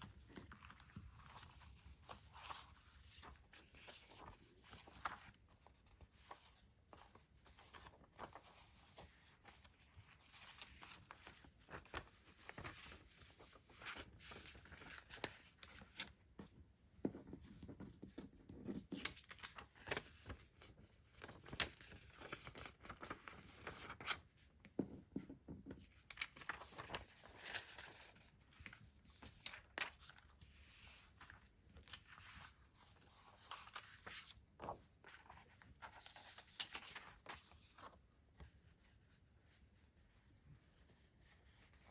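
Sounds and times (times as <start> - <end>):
paper and plastic crinkling: 26.1 - 38.0.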